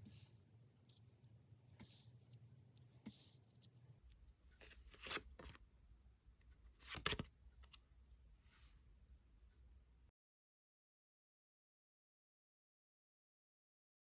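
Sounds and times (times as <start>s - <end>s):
cards rustling and tapping: 4.6s - 5.6s, 6.8s - 7.3s.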